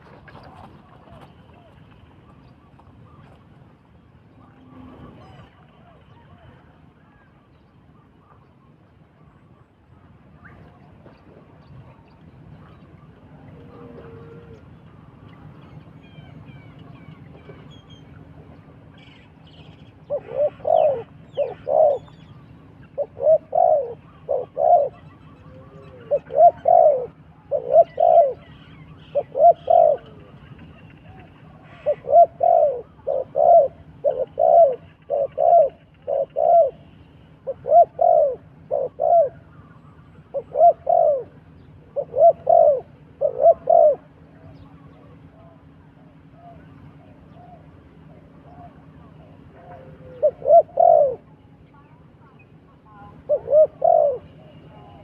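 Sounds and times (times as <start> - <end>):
dove cooing: 13.3 - 15.3, 20.0 - 51.3, 52.9 - 55.0.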